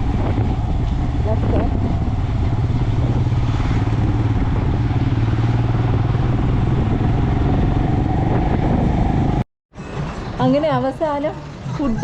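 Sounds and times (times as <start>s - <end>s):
motorcycle engine droning: 0.0s - 9.4s
road noise: 0.0s - 12.0s.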